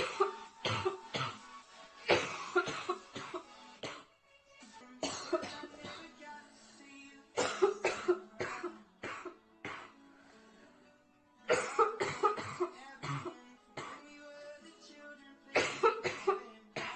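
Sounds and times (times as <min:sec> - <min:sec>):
girl coughing: 0:00.0 - 0:01.4, 0:02.1 - 0:04.0, 0:05.0 - 0:06.1, 0:07.4 - 0:09.9, 0:11.5 - 0:14.0, 0:15.6 - 0:16.9.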